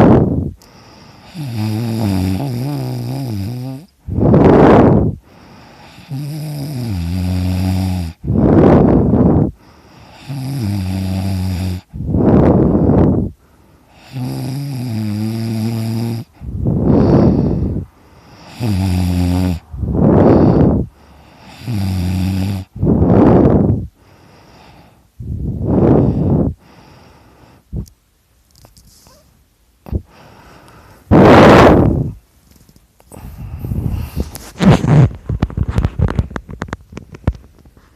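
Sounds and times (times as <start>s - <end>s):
rushing breath: 0.1s - 1.5s, 4.1s - 6.1s, 8.2s - 10.4s, 16.3s - 18.8s, 19.5s - 21.8s, 22.6s - 27.8s, 29.9s - 32.2s, 33.1s - 34.6s
man snoring loudly: 1.2s - 5.1s, 5.8s - 9.4s, 10.0s - 13.2s, 13.9s - 17.8s, 18.4s - 23.6s.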